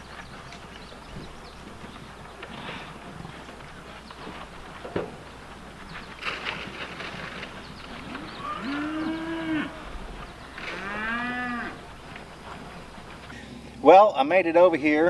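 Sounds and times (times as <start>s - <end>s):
cattle mooing: 8.3s - 9.9s, 10.6s - 11.9s, 13.3s - 15.0s.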